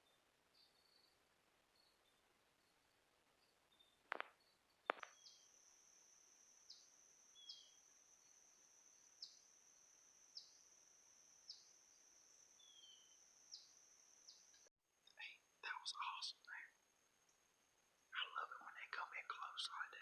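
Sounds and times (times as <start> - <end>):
faint bird chirps: 0.0 - 16.8, 18.1 - 20.0
sharp clicks or snaps: 4.1 - 5.2
insect high-pitched trill: 4.3 - 14.7.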